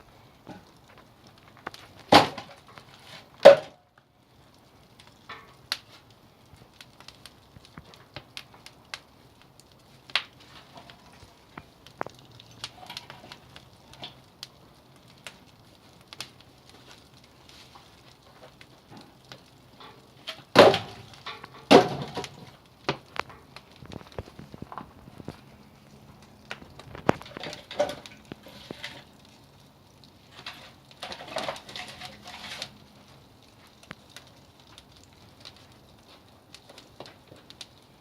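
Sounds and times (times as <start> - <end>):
firewood popping and crackling: 0.0 - 38.0
knocks of wood on wood: 20.6 - 21.0, 21.7 - 23.1.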